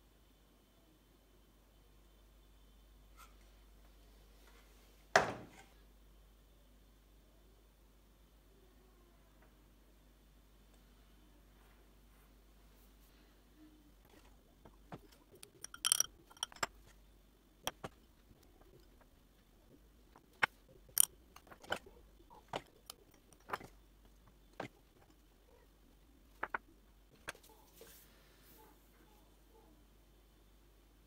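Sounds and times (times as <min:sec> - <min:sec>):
objects clicking and knocking: 0:14.0 - 0:17.0, 0:17.6 - 0:25.6, 0:26.3 - 0:27.5
ringing clink: 0:15.5 - 0:16.7.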